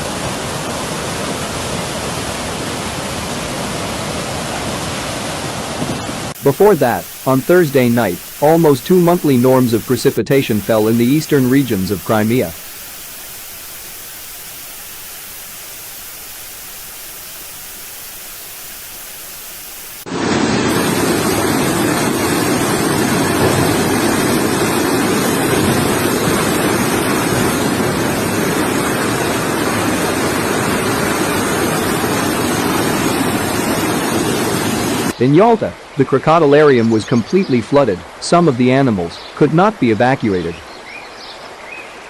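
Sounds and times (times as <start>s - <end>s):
rushing floodwater: 0.0s - 35.2s
faint steady hiss: 6.3s - 20.9s.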